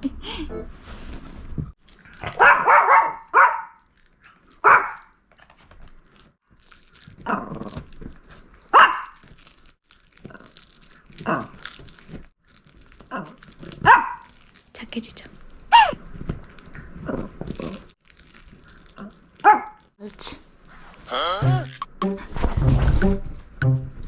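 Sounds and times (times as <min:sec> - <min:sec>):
dog barking: 0:02.4 - 0:03.8, 0:04.6 - 0:05.0, 0:13.8 - 0:14.3, 0:15.7 - 0:16.0.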